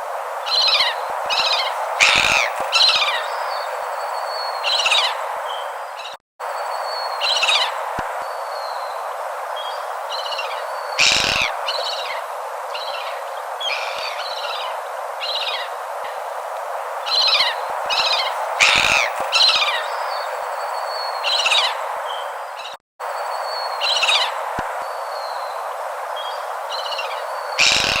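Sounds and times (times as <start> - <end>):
steady hiss: 0.0 - 28.0
bird chirps and calls: 0.5 - 6.2, 9.6 - 12.2, 17.1 - 22.8.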